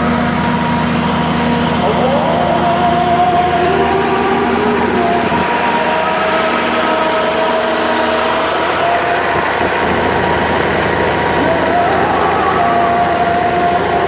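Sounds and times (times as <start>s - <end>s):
siren wailing: 0.0s - 14.0s
street traffic noise: 0.0s - 14.0s.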